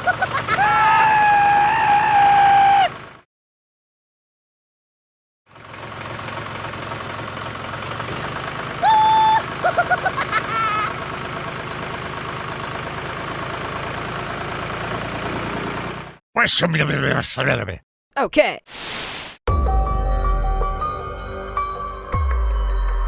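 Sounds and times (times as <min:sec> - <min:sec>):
vehicle engine idling: 0:00.0 - 0:03.2, 0:05.5 - 0:16.2.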